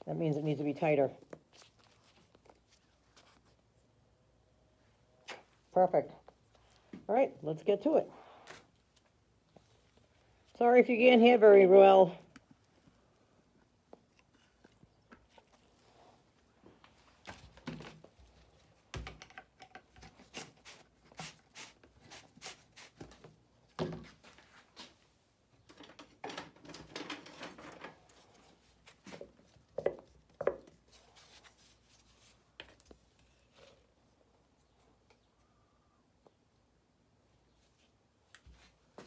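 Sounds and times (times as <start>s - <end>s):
rustling: 1.2s - 3.9s, 30.7s - 35.4s
small objects clicking and knocking: 19.0s - 20.1s.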